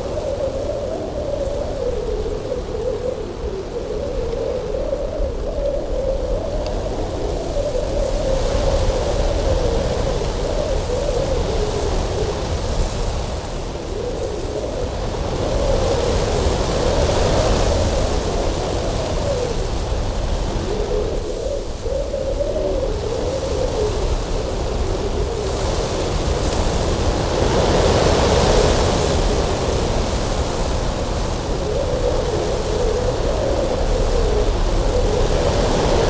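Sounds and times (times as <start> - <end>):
wind howling: 0.0 - 36.0.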